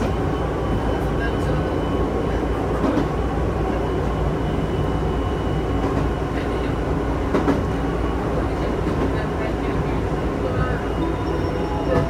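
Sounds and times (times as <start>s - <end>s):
electric train rumbling: 0.0s - 12.0s.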